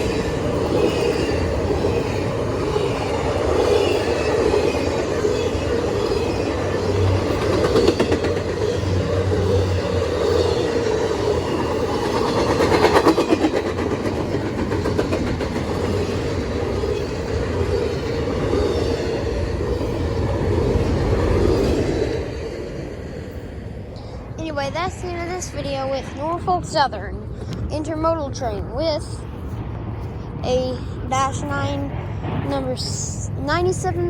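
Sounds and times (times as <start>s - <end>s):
wheels clattering over rail joints: 0.0s - 27.0s
freight train rumbling past: 0.0s - 34.0s.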